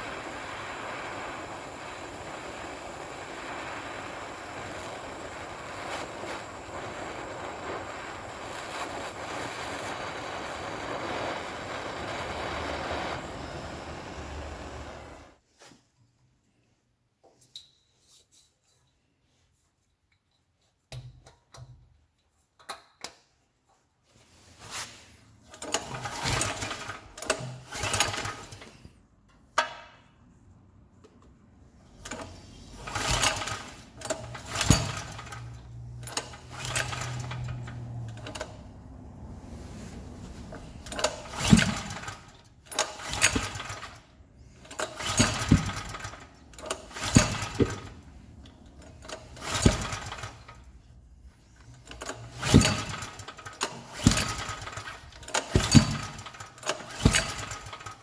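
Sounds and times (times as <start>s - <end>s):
generator engine cranking: 0.9s - 15.4s, 25.5s - 28.8s, 31.9s - 58.0s.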